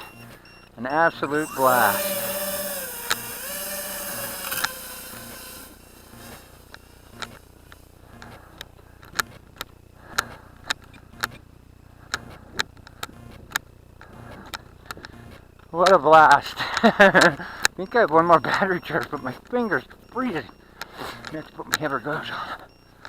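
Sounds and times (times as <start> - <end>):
electric motor whine: 0.0 - 11.4
sharp ticks: 1.1 - 11.4, 16.7 - 22.1.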